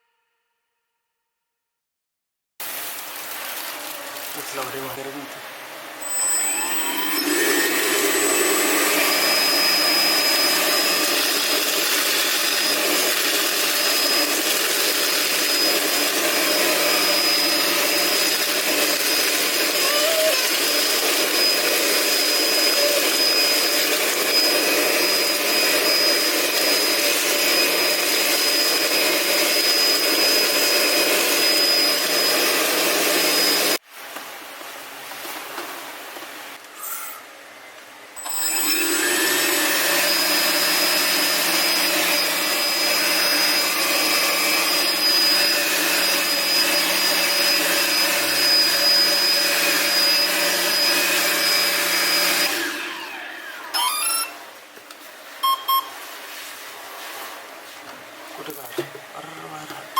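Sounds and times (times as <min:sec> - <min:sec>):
vacuum motor with high whine: 0:05.9 - 0:33.8, 0:38.2 - 0:54.4.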